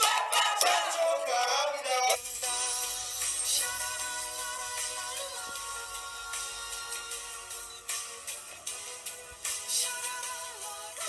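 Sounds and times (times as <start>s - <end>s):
soft electronic pop music: 0.0s - 11.0s.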